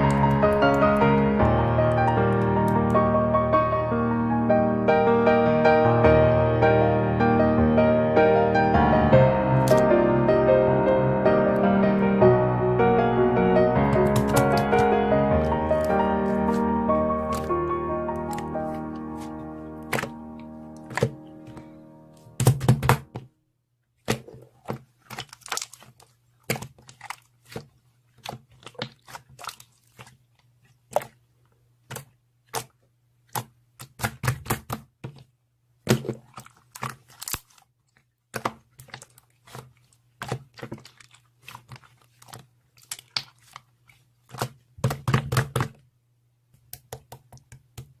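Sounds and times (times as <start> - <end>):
slime clicking and crackling: 9.6 - 9.9, 13.9 - 16.6, 17.2 - 20.1, 24.0 - 30.2, 35.9 - 37.7, 38.3 - 44.6.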